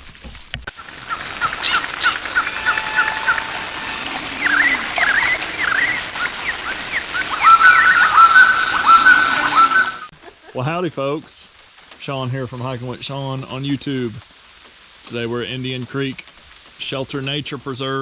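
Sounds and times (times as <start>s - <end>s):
birds chirping and whistling: 0.8s - 10.1s.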